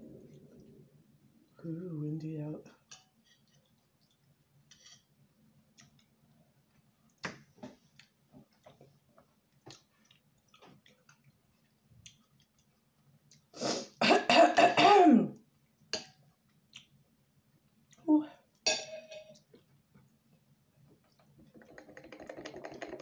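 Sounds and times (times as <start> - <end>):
person clearing throat and coughing: 14.0 - 15.3.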